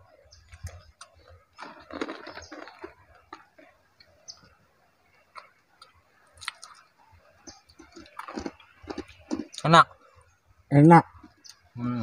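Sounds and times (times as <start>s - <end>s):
person chewing food: 0.4s - 4.2s, 5.2s - 9.6s.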